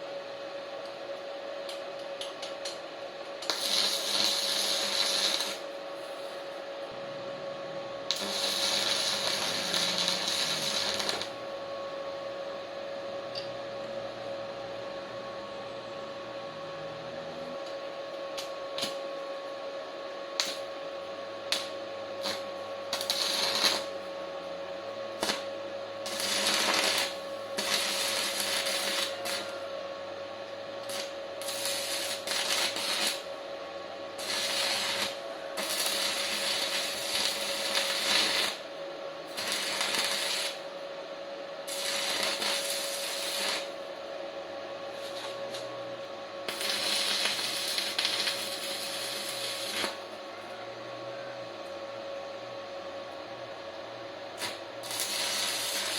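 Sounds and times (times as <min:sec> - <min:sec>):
steady whine: 0:00.0 - 0:55.9
welding arc crackling and sizzling: 0:01.6 - 0:06.4, 0:08.1 - 0:11.4, 0:17.6 - 0:19.1, 0:20.4 - 0:20.8, 0:21.4 - 0:24.1, 0:25.1 - 0:29.7, 0:30.7 - 0:33.4, 0:34.1 - 0:40.8, 0:41.6 - 0:44.1, 0:44.9 - 0:50.2, 0:54.4 - 0:55.9.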